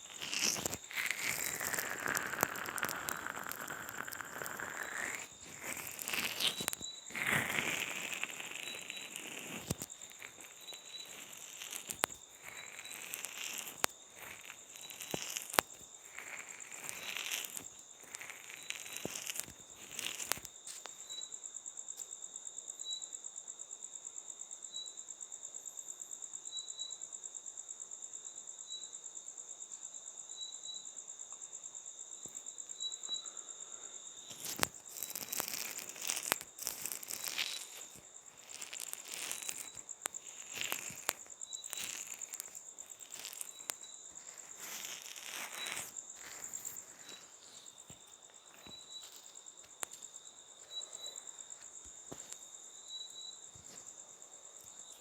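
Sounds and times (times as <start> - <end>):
crinkly scratching and rustling: 0.0 - 20.9, 34.3 - 51.2.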